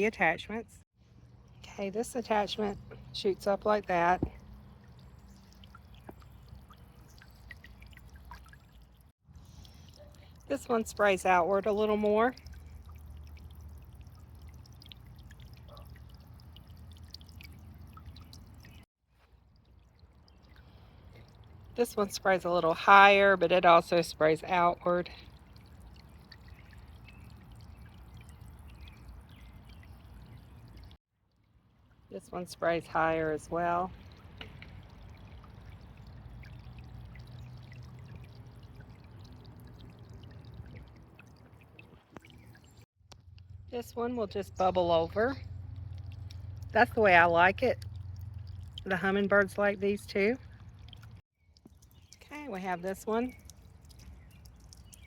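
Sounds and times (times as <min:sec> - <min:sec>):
pump low hum: 0:01.0 - 0:55.0
droplets splashing into water: 0:03.7 - 0:23.8, 0:33.0 - 0:43.5, 0:45.4 - 0:55.0
fountain spray splashing: 0:51.8 - 0:55.0.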